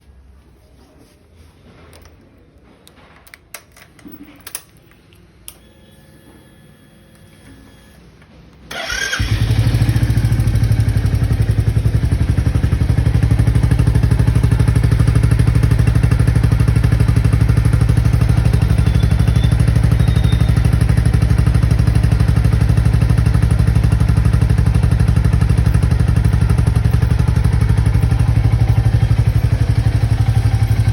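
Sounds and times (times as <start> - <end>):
motorcycle starter turning: 8.7 - 11.4
motorcycle engine idling: 8.8 - 30.9.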